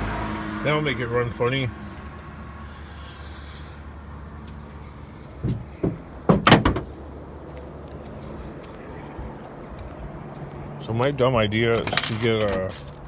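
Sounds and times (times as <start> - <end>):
short knocks: 5.4 - 7.0.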